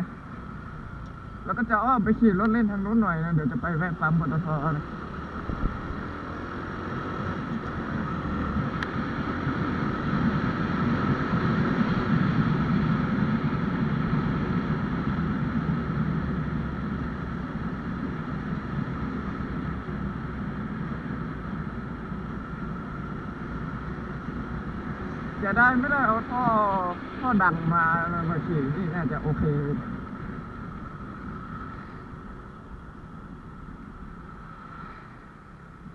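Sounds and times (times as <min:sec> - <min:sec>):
road noise: 0:00.0 - 0:35.9
wind buffeting the microphone: 0:05.4 - 0:06.2.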